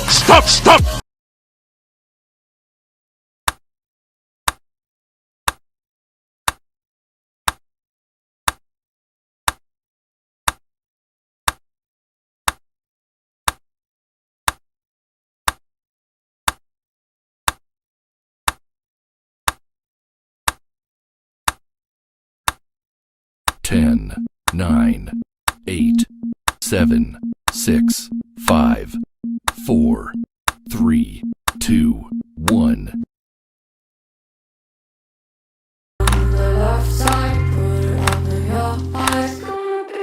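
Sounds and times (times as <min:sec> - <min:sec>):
timer ticking: 0:23.7 - 0:33.1.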